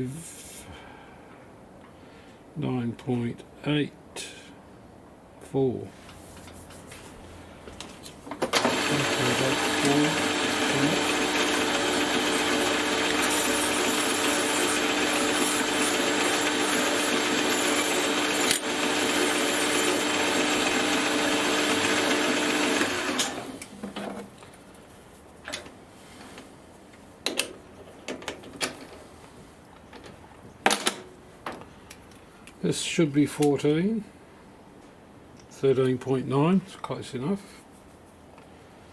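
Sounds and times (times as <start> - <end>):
metal lathe running: 8.6 - 23.6.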